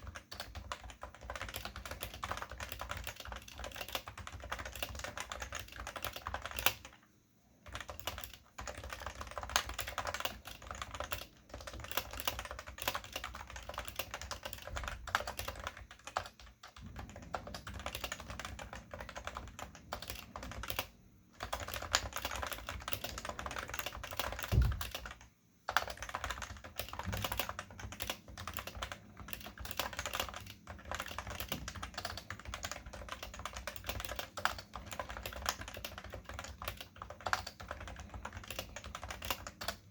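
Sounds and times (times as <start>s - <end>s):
keyboard typing: 0.0s - 39.9s
heavy low thump: 24.5s - 24.9s.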